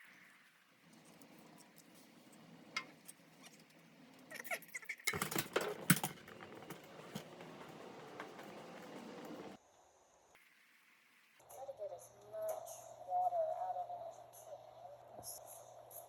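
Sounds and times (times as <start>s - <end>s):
handling clicks and rustles: 0.8s - 9.6s.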